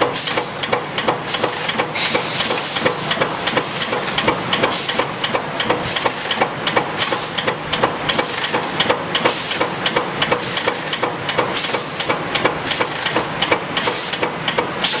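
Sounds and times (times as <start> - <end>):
welding machine clacks: 0.0 - 15.0
air hiss bursts: 1.3 - 6.3.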